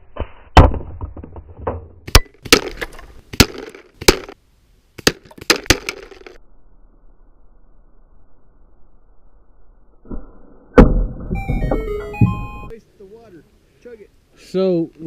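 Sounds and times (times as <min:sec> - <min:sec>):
bb guns firing: 0:02.0 - 0:04.4, 0:05.0 - 0:06.4.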